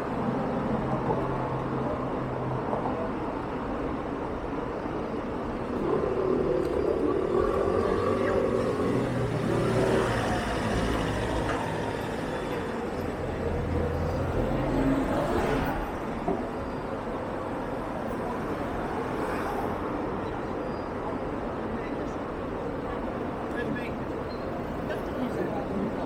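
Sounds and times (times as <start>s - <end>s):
vehicles driving past: 4.6s - 21.3s.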